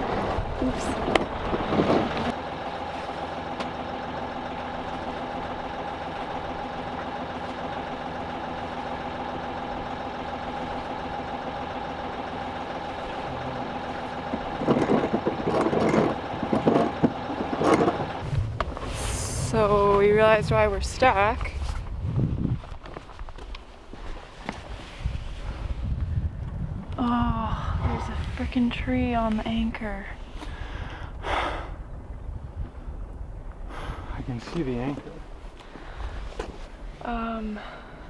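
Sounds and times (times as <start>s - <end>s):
boat engine idling: 0.0s - 21.7s, 27.0s - 38.0s
loud irregular noises: 0.0s - 22.0s.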